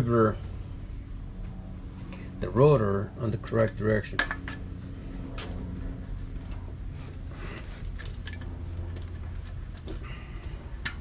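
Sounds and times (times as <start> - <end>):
steady low hum: 0.0 - 11.0
metal clicks and scrapes: 7.8 - 10.0.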